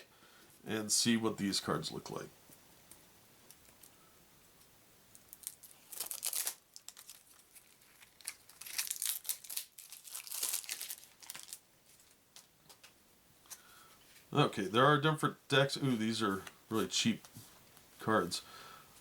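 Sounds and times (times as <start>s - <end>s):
wrapping crinkling and tearing: 5.1s - 12.9s.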